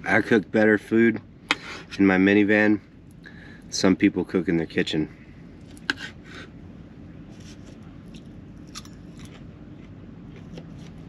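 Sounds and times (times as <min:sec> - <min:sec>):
steady low hum: 0:00.0 - 0:11.0
chewing: 0:07.4 - 0:11.0.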